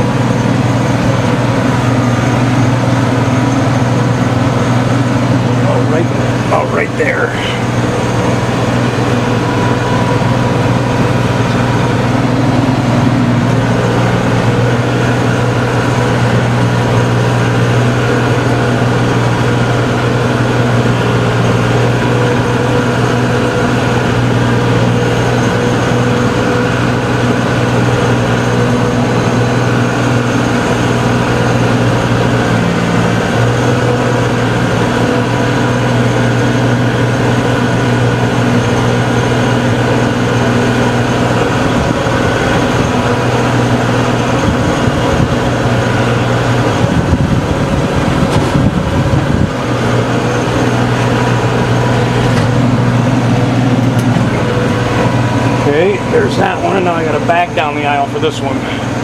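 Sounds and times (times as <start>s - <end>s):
tractor engine under load: 0.0s - 59.0s.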